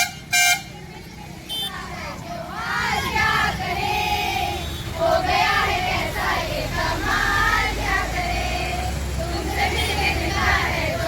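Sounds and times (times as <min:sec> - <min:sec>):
low traffic rumble: 0:00.0 - 0:11.0
children singing in chorus: 0:01.7 - 0:11.0.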